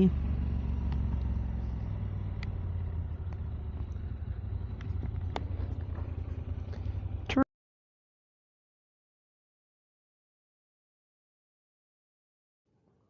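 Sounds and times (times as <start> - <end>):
motorcycle engine rumble: 0.0 - 7.4
faint ticks: 2.3 - 2.6.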